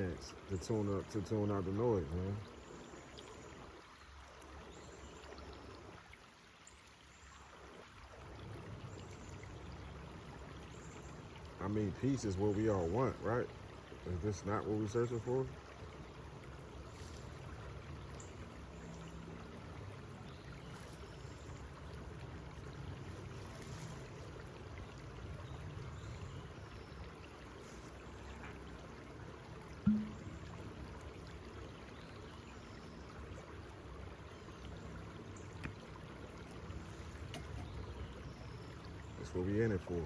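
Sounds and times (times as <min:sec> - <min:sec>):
flowing water rushing: 0:00.0 - 0:40.0
short thud: 0:29.8 - 0:30.4.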